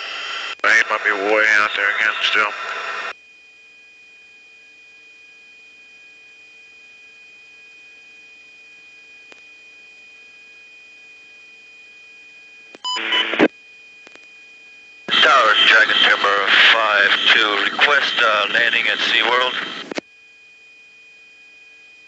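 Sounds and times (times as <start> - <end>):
steady electronic radio tones: 0.0 - 3.1, 12.8 - 13.5, 15.1 - 20.0
faint radio hiss: 15.1 - 19.8
loud burst of radio noise: 15.1 - 19.9.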